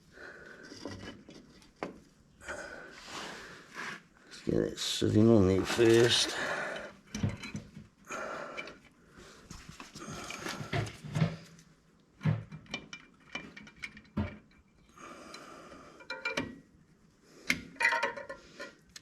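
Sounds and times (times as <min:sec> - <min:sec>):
person breathing: 0:02.4 - 0:04.0, 0:06.0 - 0:07.0, 0:08.1 - 0:10.9, 0:15.0 - 0:16.1.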